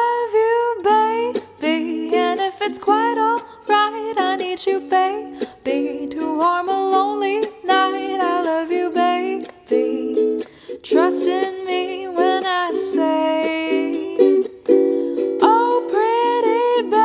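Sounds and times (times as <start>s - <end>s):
ukulele strumming chords: 0.0s - 17.0s.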